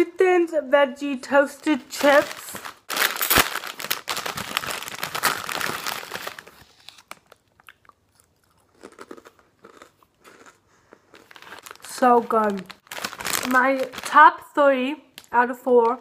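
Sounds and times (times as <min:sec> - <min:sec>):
person crunching crispy chips: 0:02.0 - 0:14.2.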